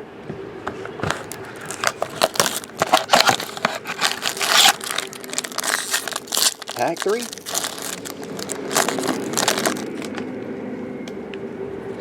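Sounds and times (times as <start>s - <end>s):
foil wrapper crinkling: 1.0s - 10.2s.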